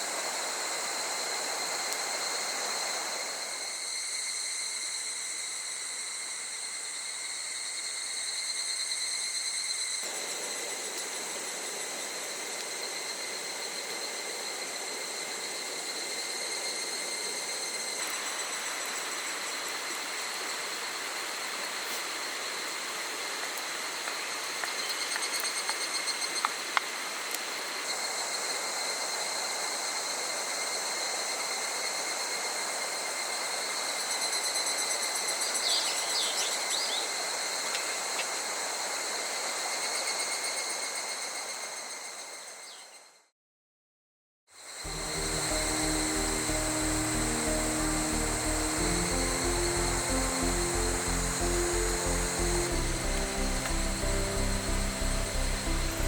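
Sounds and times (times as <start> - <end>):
insect chorus trilling: 0.0 - 43.2, 44.6 - 56.0
rushing hiss: 44.9 - 56.0.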